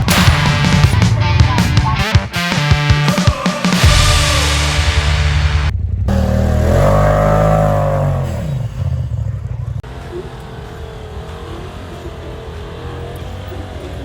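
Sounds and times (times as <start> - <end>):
engine revving: 4.0 - 14.0.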